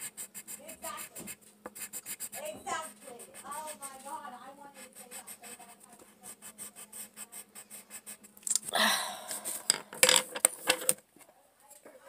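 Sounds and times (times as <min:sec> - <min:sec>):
pencil scribbling on paper: 0:00.0 - 0:08.3.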